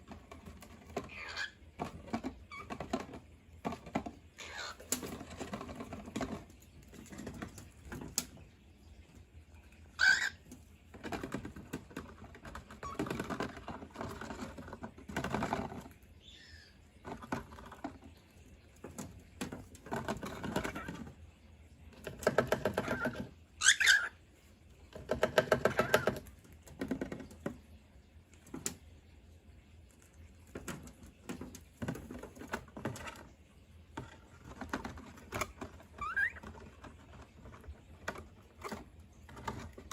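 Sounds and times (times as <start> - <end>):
cockatiels tapping and scratching: 0.0 - 39.9
cockatiel call: 1.1 - 1.6, 10.0 - 10.4, 22.9 - 24.1.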